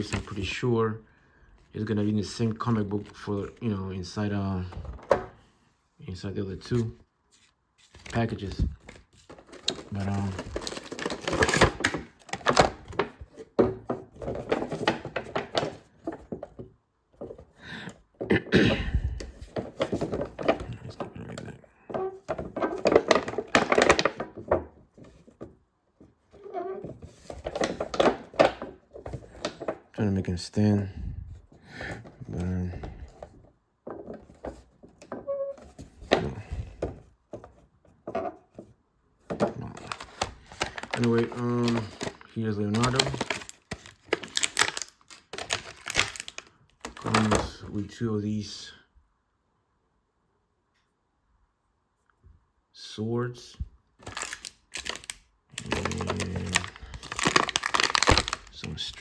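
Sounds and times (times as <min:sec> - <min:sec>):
packaging being handled: 0:06.7 - 0:18.0, 0:19.2 - 0:25.5, 0:26.3 - 0:30.0, 0:39.3 - 0:47.6, 0:54.0 - 0:59.0.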